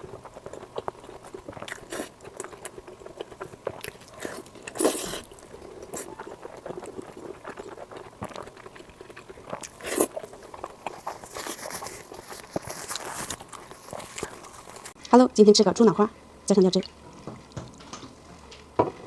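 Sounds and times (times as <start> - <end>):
chewing with wet clicks: 0.0 - 15.0.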